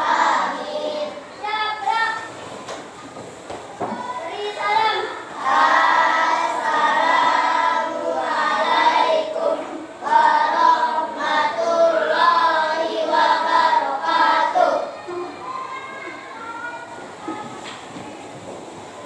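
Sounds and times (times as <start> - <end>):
children singing together: 0.0 - 2.3, 4.0 - 16.2.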